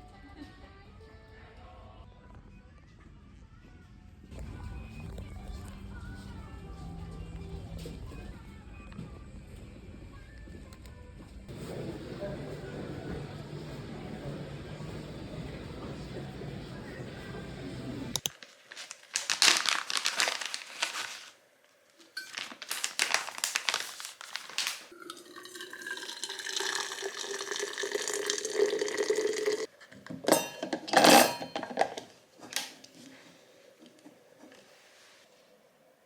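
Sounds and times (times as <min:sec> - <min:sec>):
dishes and utensils clattering: 0:22.2 - 0:22.8, 0:30.1 - 0:32.1
water flowing into a vessel: 0:23.7 - 0:29.7.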